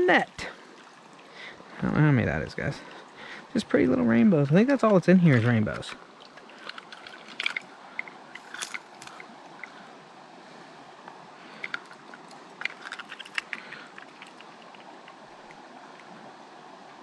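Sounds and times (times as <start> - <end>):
creek water running: 0.0 - 17.0
handling clicks and rustles: 3.7 - 9.8, 11.5 - 15.6.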